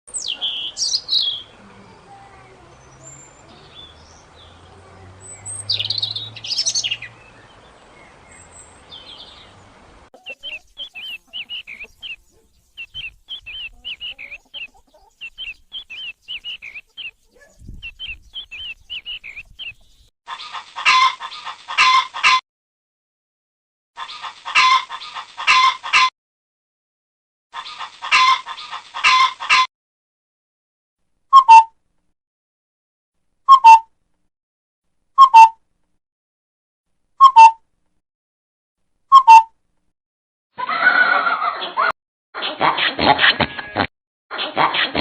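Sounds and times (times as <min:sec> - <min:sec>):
small bird rapid high chirps: 0:00.1 - 0:01.5, 0:05.2 - 0:07.6, 0:10.2 - 0:20.1
songbird calls: 0:00.1 - 0:02.2, 0:02.8 - 0:09.6, 0:10.2 - 0:20.1
loud harsh bird calls: 0:05.2 - 0:07.6, 0:10.2 - 0:19.4.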